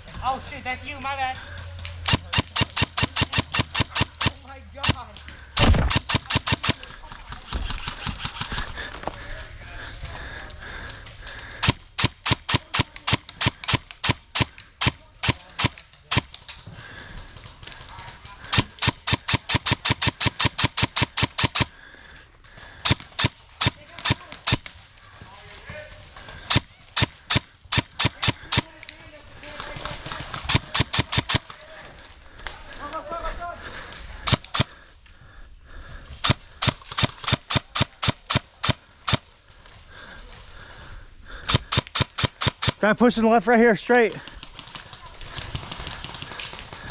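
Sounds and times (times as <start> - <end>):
airsoft gun rapid shots: 2.1 - 5.0, 5.6 - 8.9, 11.5 - 16.4, 18.4 - 21.7, 22.8 - 24.7, 26.4 - 28.7, 29.7 - 31.6, 34.2 - 34.7, 36.2 - 39.2, 41.4 - 42.9.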